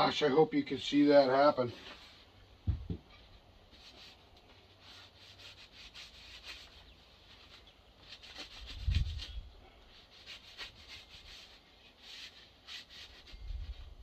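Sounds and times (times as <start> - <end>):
dull low thump: 2.6 - 3.1.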